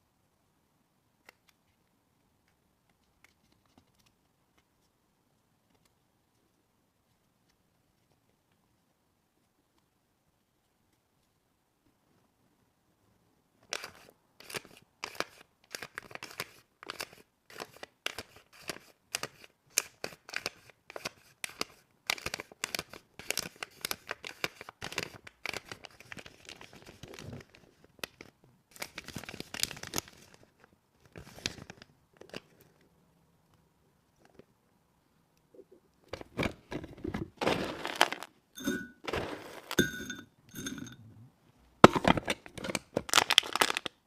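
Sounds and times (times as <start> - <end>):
packaging tearing and crinkling: 28.8 - 30.4, 37.4 - 38.3, 42.6 - 44.0.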